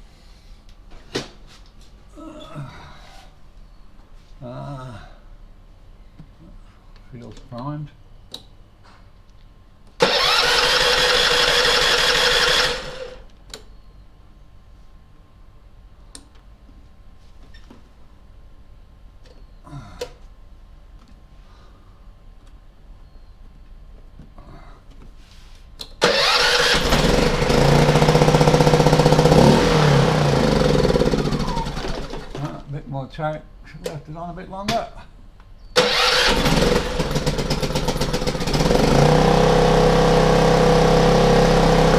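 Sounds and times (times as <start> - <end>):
generator electric starter cranking: 10.0 - 13.3, 26.0 - 32.8, 35.8 - 41.9.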